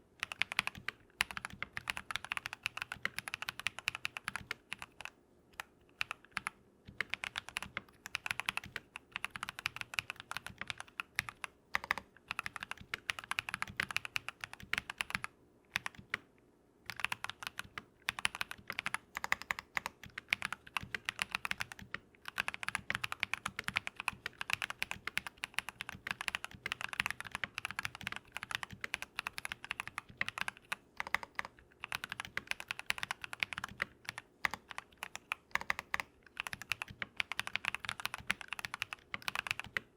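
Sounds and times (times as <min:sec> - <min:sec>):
typing on a mechanical keyboard: 0:00.0 - 0:16.3, 0:16.9 - 0:39.9.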